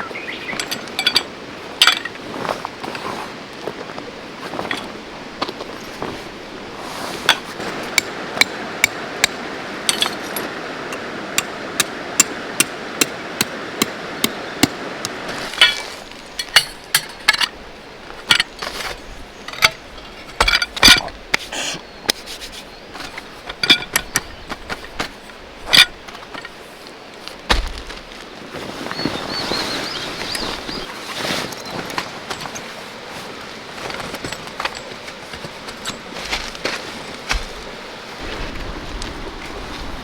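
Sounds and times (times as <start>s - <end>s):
hammer driving tent stakes: 11.4s - 17.6s, 18.2s - 26.6s.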